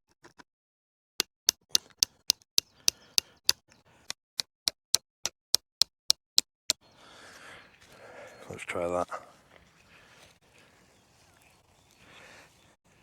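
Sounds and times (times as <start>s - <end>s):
axe head tapping knife spine: 1.2s - 3.6s.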